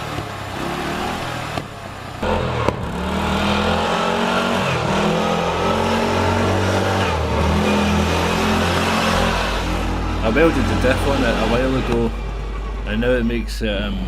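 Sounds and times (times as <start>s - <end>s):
lawnmower engine revving: 0.0s - 13.1s.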